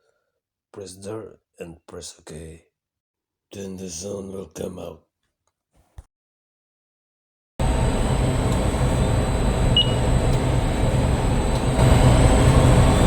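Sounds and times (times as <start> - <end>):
fire alarm sounders: 7.6 - 13.0.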